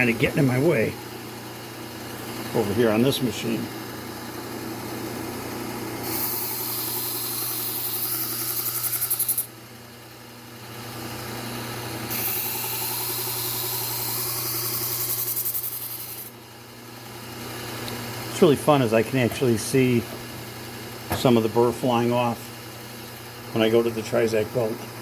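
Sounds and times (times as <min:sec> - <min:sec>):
belt sander humming: 0:00.0 - 0:09.5, 0:11.0 - 0:16.4, 0:17.3 - 0:25.0
knife blade grinding on belt: 0:06.0 - 0:09.5, 0:12.1 - 0:16.3.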